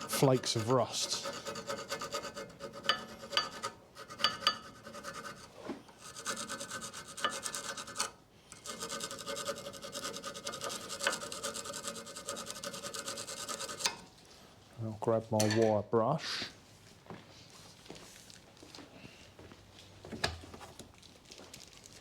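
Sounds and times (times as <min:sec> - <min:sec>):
metal file scraping rust: 0:00.0 - 0:14.1.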